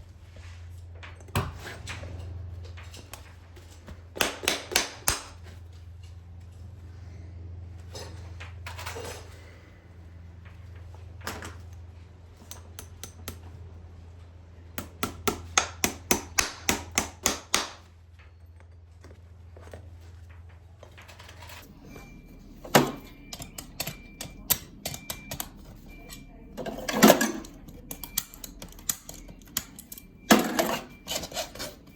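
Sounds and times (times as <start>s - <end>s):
steady low hum: 0.0s - 31.9s
hammer tapping on metal: 4.2s - 5.4s, 12.4s - 13.5s, 14.8s - 17.9s.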